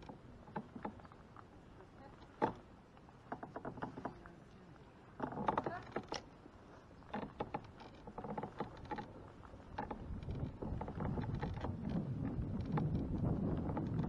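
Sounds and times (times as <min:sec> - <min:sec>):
light knocks and clicks: 0:02.2 - 0:04.4.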